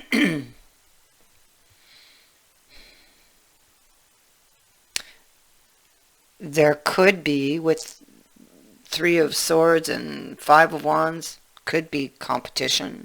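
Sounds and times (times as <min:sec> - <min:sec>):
woman breathing softly: 0:01.6 - 0:03.5.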